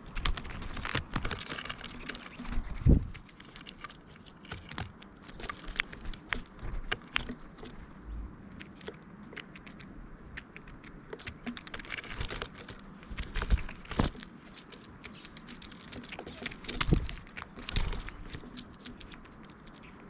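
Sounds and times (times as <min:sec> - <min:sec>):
birds pecking on a feeder: 0:00.0 - 0:20.0.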